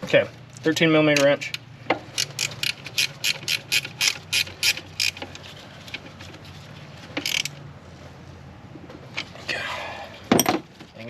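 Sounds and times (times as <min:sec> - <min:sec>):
ratcheting wrench clicking: 0:01.2 - 0:06.0, 0:07.2 - 0:07.6.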